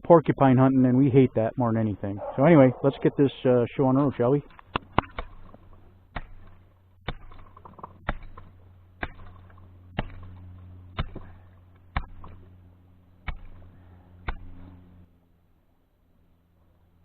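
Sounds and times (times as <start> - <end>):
axe chopping ice: 6.1 - 10.4, 11.0 - 12.4, 13.2 - 14.6.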